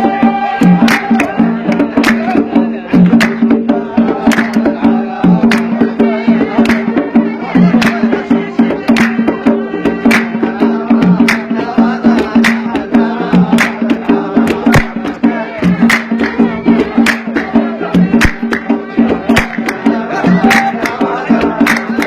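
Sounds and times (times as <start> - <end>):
sharp drum strikes: 0.0 - 22.0.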